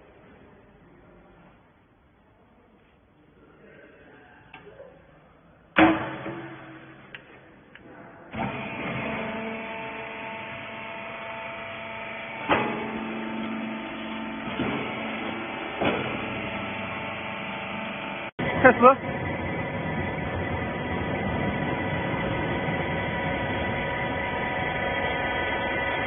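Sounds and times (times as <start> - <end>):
motor and pump hum: 8.3 - 26.0.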